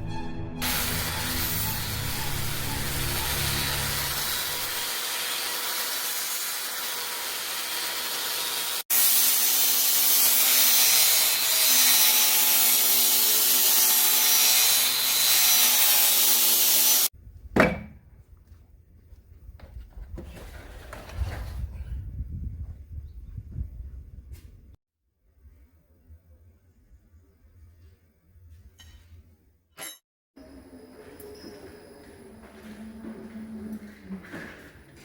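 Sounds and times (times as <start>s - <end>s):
power tool grinding steel: 0.6s - 17.1s.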